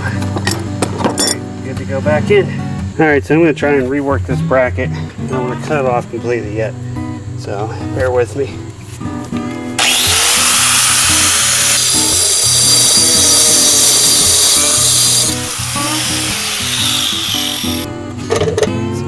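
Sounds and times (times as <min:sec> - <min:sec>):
power tool cutting metal: 0:09.8 - 0:17.9.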